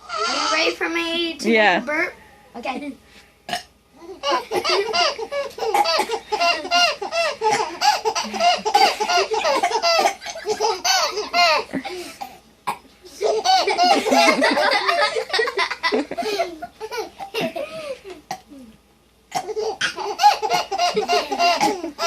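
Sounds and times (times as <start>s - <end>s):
baby giggling and laughing: 4.0s - 12.1s, 13.2s - 18.0s, 19.4s - 22.0s.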